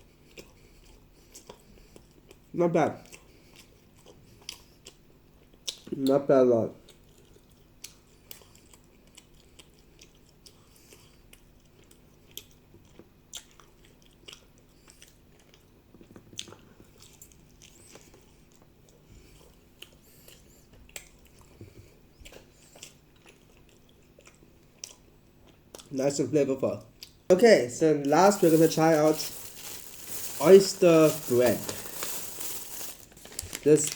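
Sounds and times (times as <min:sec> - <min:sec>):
person chewing with wet clicks: 0:00.2 - 0:06.1, 0:06.8 - 0:25.9, 0:26.9 - 0:27.2.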